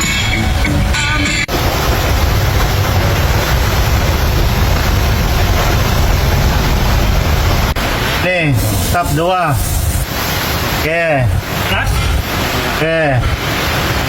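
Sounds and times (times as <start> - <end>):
diesel engine rumbling: 0.0 - 14.0
man talking: 8.1 - 9.8, 10.7 - 13.4.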